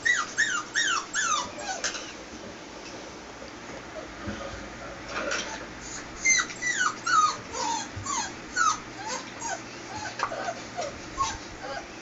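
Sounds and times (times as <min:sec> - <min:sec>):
puppy whimpering: 0:00.0 - 0:02.2, 0:05.4 - 0:12.0.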